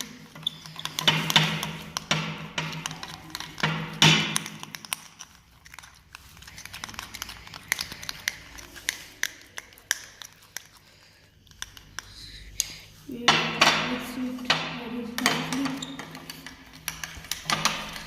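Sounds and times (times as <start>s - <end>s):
slime wet clicks and crackles: 4.2s - 12.8s.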